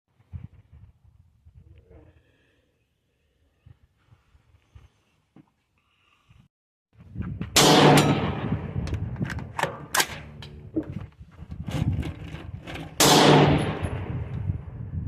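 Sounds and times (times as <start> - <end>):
rifle shots with echo: 7.6 - 8.8, 13.0 - 14.1.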